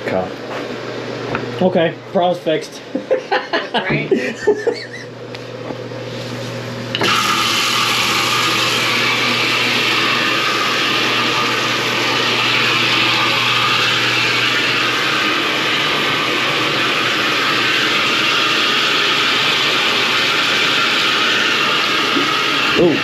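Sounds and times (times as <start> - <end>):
steady low hum: 0.0 - 7.0
faucet water running into tub: 6.9 - 23.0.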